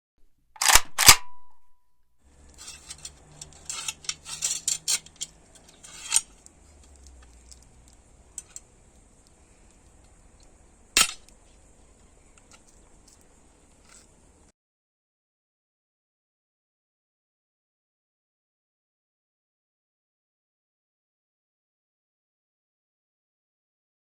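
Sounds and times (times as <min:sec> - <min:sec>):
sharp metallic snap: 0:00.6 - 0:01.6, 0:11.0 - 0:11.3
metallic clicking and clattering: 0:02.4 - 0:08.7.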